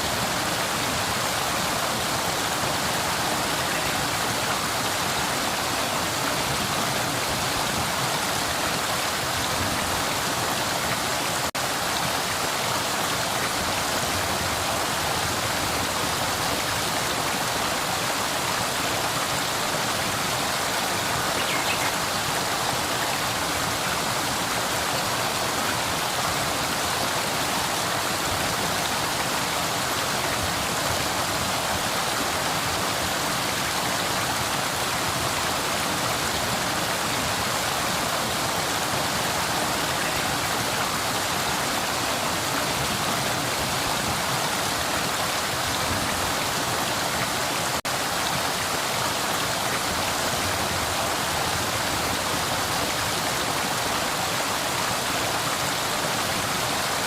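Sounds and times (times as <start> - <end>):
river water rushing: 0.0 - 57.0.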